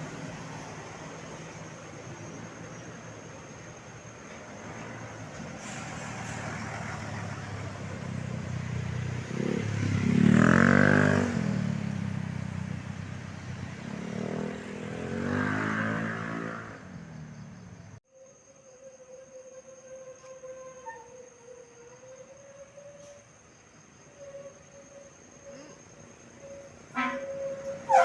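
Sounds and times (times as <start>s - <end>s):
bus engines passing: 0.0s - 18.0s, 24.6s - 28.0s.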